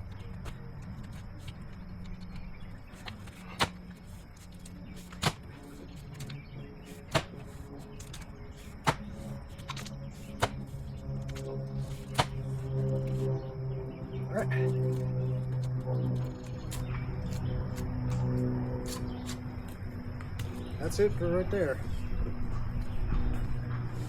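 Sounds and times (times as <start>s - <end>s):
pickaxe striking clay and rock: 5.1s - 5.5s, 7.1s - 7.4s, 8.8s - 9.2s, 10.4s - 10.6s, 12.1s - 12.4s.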